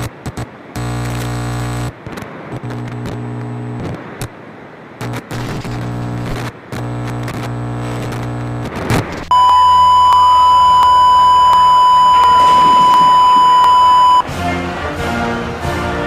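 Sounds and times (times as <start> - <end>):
high electronic beep: 9.3 - 14.2
music: 14.2 - 16.0.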